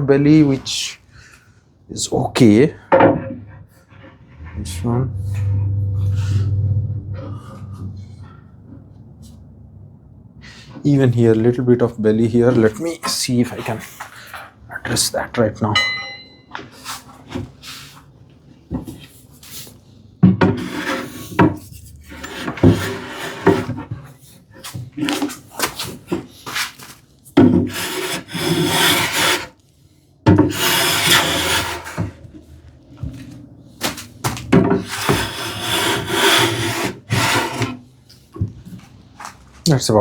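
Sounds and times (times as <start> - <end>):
hand plane cutting wood: 20.5 - 21.4, 22.1 - 23.8, 27.4 - 29.5, 30.3 - 32.2, 34.6 - 37.8.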